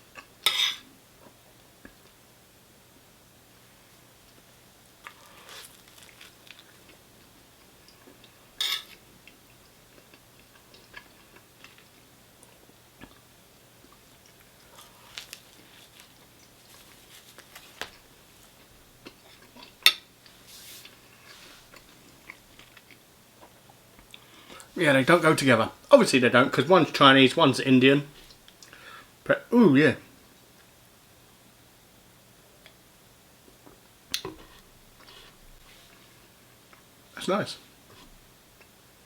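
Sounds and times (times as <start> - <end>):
cutlery and dishes clinking: 0.5 - 0.8, 8.6 - 9.0
chewing: 7.6 - 13.2, 13.8 - 24.7.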